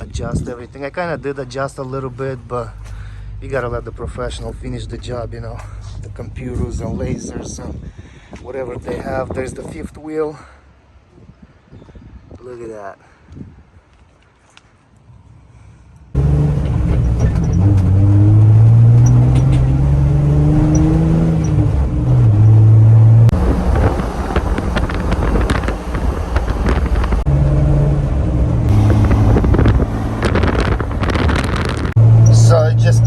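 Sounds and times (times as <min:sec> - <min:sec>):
car engine and exhaust: 0:00.0 - 0:07.9, 0:16.1 - 0:33.0
rattles and clicks: 0:23.3 - 0:27.3.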